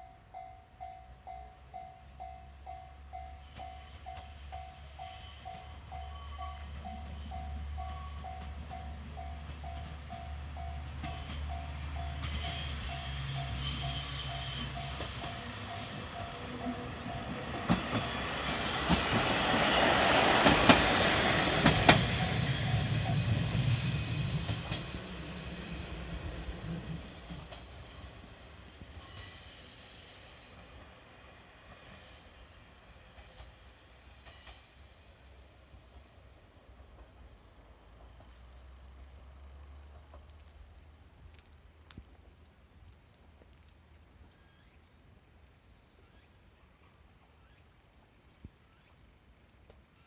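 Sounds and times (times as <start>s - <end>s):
train wheels knocking on rail joints: 3.5s - 25.2s.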